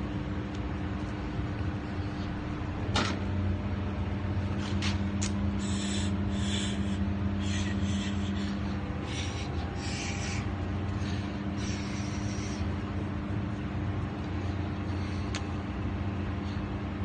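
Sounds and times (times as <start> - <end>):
machine hum: 0.0 - 17.0
short rasping bursts: 5.6 - 12.8.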